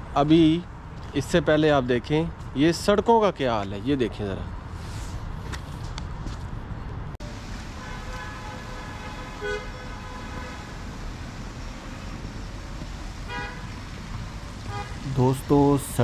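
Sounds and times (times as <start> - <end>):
road traffic rumble: 3.7 - 16.0
vehicle horn: 7.7 - 11.1, 13.2 - 16.0.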